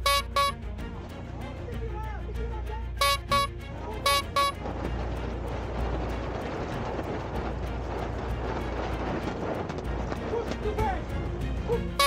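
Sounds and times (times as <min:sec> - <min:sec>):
wind buffeting microphone: 0:04.6 - 0:11.4.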